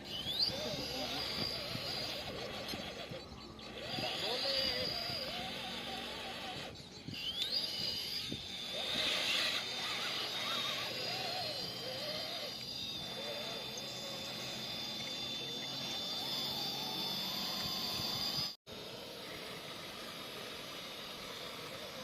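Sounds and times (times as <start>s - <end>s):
electric motor and gears whining: 0.0s - 22.0s
thin high whine: 0.0s - 22.0s.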